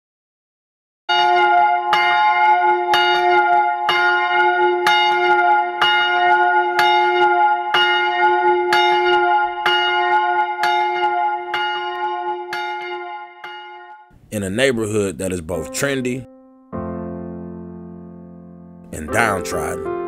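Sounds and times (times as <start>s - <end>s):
church bell tolling: 1.1s - 14.2s, 18.9s - 20.0s.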